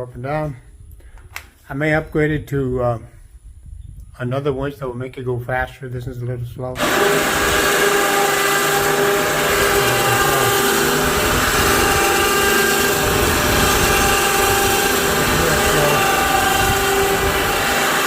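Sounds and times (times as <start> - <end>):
electric winch motor whining: 6.8 - 18.0.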